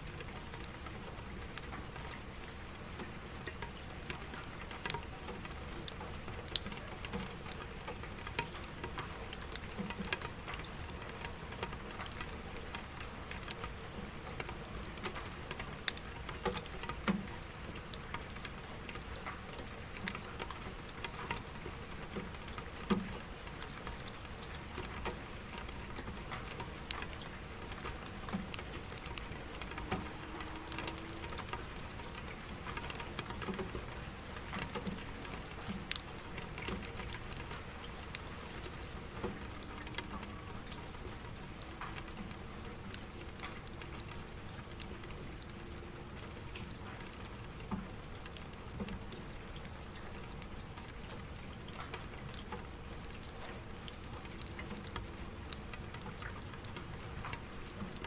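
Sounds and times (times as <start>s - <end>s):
raindrops ticking: 0.0s - 58.0s.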